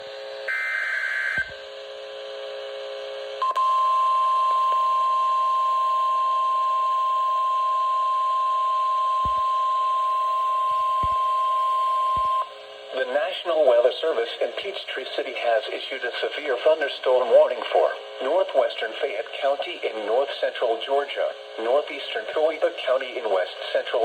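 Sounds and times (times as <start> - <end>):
steady warning alarm tone: 0.5 - 1.5, 3.5 - 12.5.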